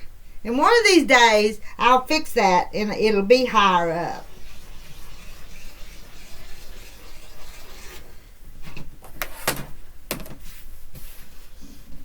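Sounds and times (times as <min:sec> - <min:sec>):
rotary cutter hissing through fabric: 0:04.1 - 0:08.2.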